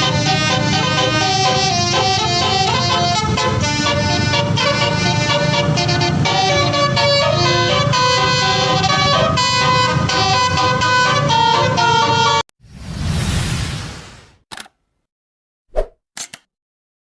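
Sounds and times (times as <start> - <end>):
multi-note air horn melody: 0.0 - 12.4
brief whoosh: 12.6 - 14.4.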